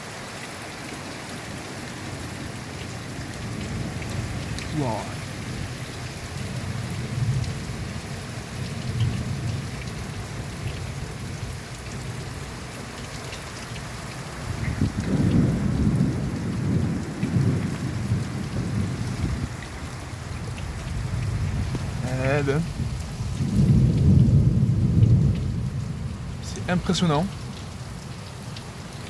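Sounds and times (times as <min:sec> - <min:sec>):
torrential rain pouring: 0:00.0 - 0:29.0
strong wind gusts: 0:14.4 - 0:27.2.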